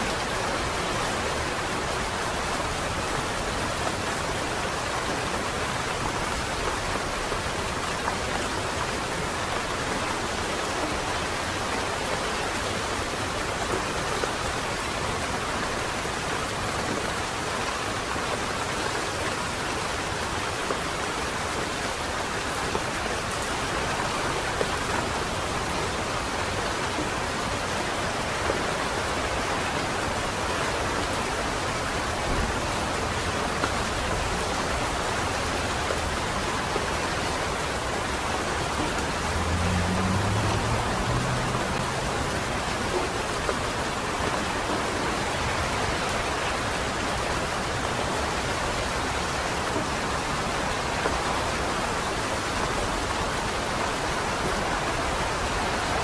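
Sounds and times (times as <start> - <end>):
rain on wet street: 0.0 - 56.0.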